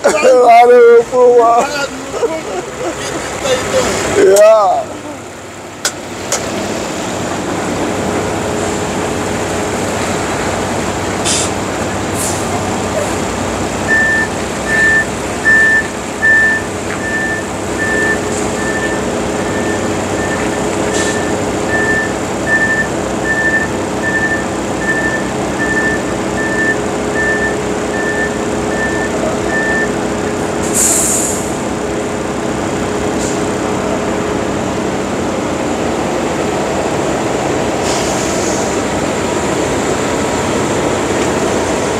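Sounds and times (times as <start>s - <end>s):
truck diesel engine running: 0.0s - 41.9s
reversing alarm beeping: 13.8s - 30.0s
air hiss: 30.6s - 31.6s.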